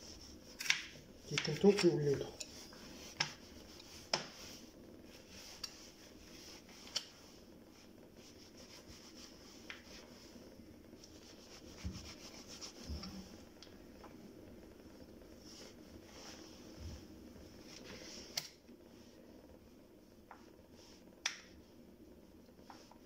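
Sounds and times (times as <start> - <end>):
light rubbing handling noise: 0.0 - 14.2.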